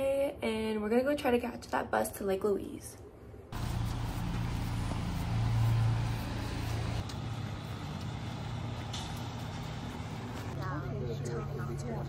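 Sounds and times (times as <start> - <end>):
road and traffic noise: 3.5 - 12.0
vehicle engine running: 3.6 - 12.0.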